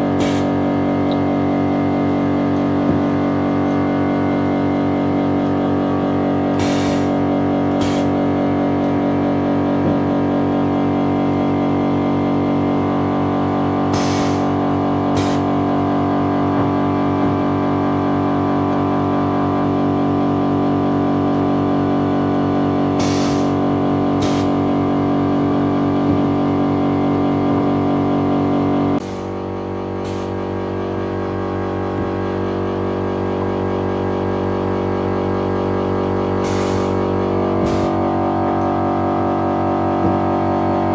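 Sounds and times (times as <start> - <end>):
machine electrical hum: 0.0 - 40.9
short pneumatic air hisses: 0.2 - 0.5, 6.6 - 7.2, 7.8 - 8.2, 13.9 - 14.5, 15.1 - 15.5, 23.0 - 23.6, 24.2 - 24.6, 29.0 - 29.4, 30.0 - 30.4, 36.4 - 37.0, 37.6 - 38.0.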